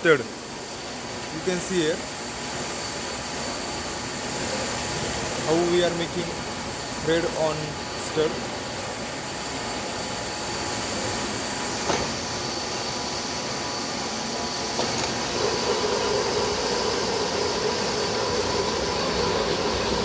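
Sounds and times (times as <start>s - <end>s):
lathe cutting metal: 15.1s - 20.0s.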